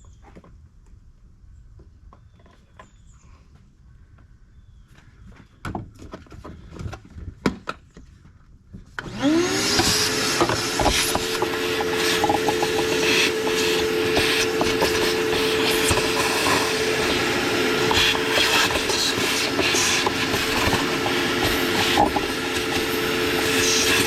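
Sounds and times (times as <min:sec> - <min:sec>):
vacuum cleaner motor: 0:09.0 - 0:24.0.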